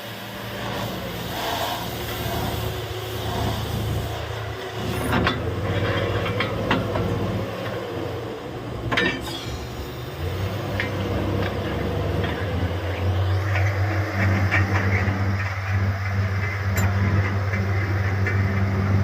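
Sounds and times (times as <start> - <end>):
drilling rig engine running: 0.0 - 19.0
metallic clanks and knocks: 8.9 - 9.4, 13.5 - 18.7.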